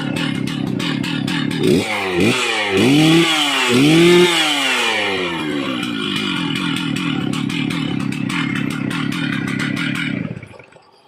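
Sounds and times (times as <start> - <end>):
chainsaw revving and idling: 0.0 - 10.5
rapid even ticking: 5.4 - 10.9.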